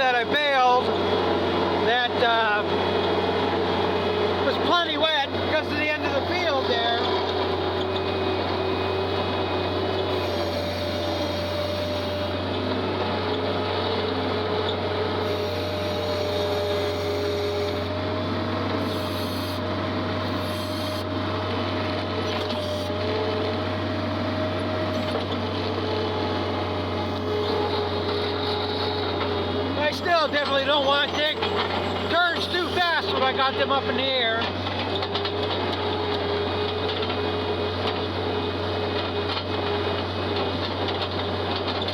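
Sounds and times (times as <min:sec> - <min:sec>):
steady whine: 0:00.0 - 0:18.5, 0:20.3 - 0:34.7
skid steer engine running: 0:00.0 - 0:41.9.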